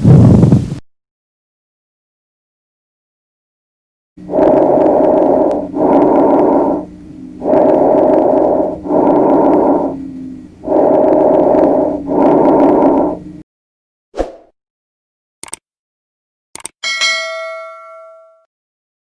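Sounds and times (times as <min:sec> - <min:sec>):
breathing through a stethoscope: 0:04.2 - 0:13.4
low steady tone: 0:04.2 - 0:13.4.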